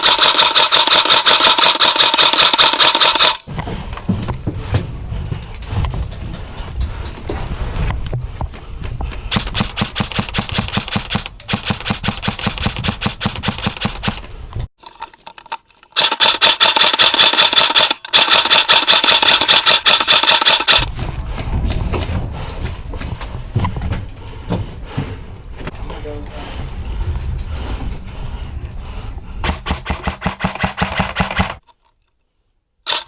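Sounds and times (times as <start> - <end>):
airsoft gun firing full auto: 0.0 - 3.4, 16.0 - 20.9.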